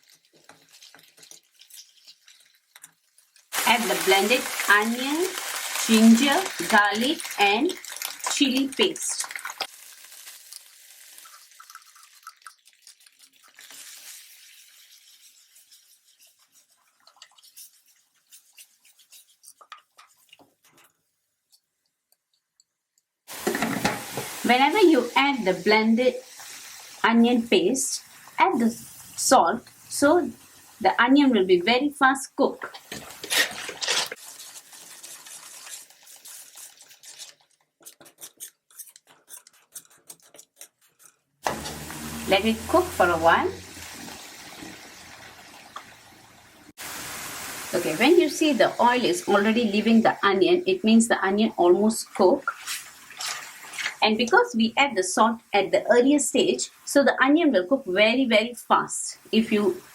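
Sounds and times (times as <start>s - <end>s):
paste sizzling in hot oil: 0.0s - 21.3s, 23.3s - 31.9s, 32.6s - 59.9s
hot oil hissing: 3.5s - 7.6s, 23.3s - 30.8s, 41.4s - 50.1s
utensil scraping a pan: 15.1s - 20.9s, 23.3s - 24.5s, 32.7s - 44.7s, 52.2s - 54.0s.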